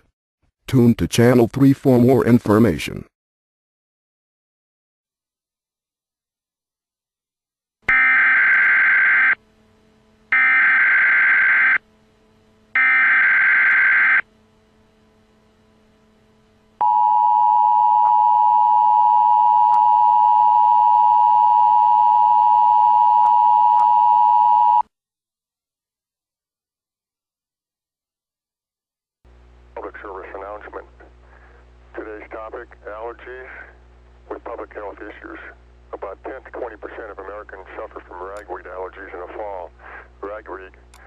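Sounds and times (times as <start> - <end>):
harsh buzzing data bursts: 7.9 - 17.2.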